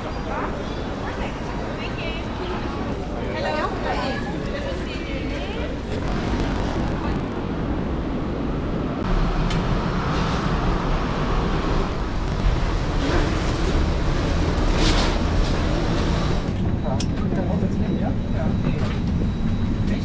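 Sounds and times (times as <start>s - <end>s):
aircraft cabin rumble and air noise: 0.0s - 3.0s.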